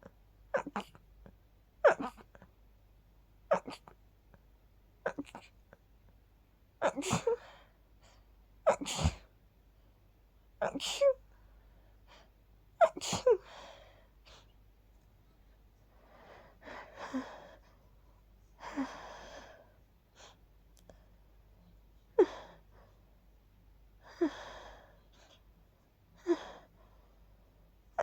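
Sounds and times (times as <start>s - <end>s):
person sneezing: 6.8s - 7.4s, 8.7s - 9.3s, 12.8s - 13.4s.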